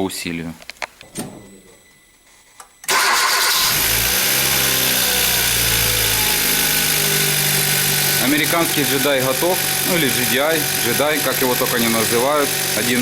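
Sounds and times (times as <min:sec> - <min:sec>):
car engine idling: 0:02.9 - 0:13.0.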